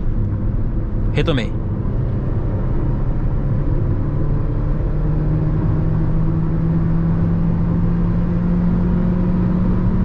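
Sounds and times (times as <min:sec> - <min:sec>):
car engine accelerating: 0:00.0 - 0:10.0
low road rumble: 0:00.0 - 0:10.0.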